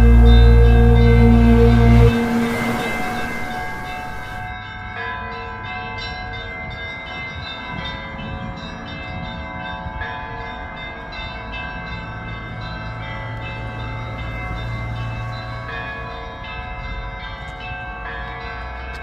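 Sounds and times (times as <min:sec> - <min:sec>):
low rumbling drone: 0:00.0 - 0:04.5
ringing bell-like tones: 0:00.0 - 0:18.5.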